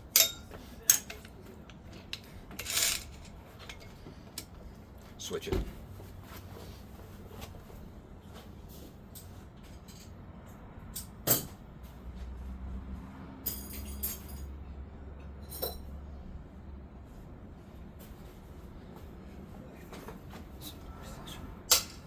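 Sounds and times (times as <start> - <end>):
metal tools clinking: 0.0 - 1.4, 2.0 - 4.0, 13.4 - 14.6, 15.4 - 15.9, 21.7 - 22.0.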